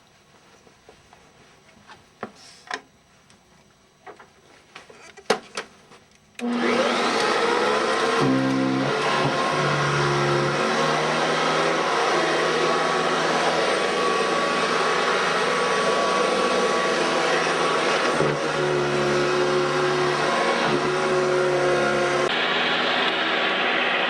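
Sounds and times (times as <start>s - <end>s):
vacuum cleaner running: 6.4s - 24.0s.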